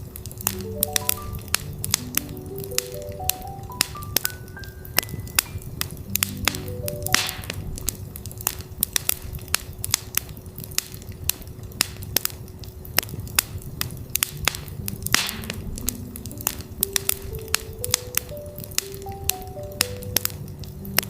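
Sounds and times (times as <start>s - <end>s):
campfire crackling: 0.0s - 21.0s
soft synth notes: 0.5s - 7.9s.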